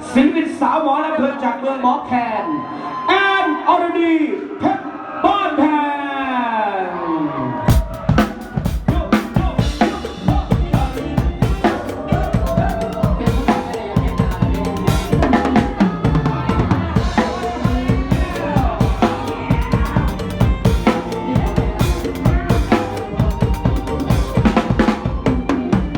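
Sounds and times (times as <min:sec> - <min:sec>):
band track with melodic lines: 0:07.7 - 0:25.9
drum kit playing: 0:07.7 - 0:25.9.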